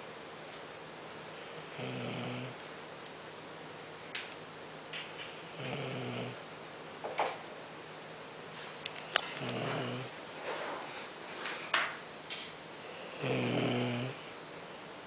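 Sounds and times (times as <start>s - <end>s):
man snoring: 1.6s - 2.6s, 5.4s - 6.4s, 9.3s - 10.1s, 12.9s - 14.3s.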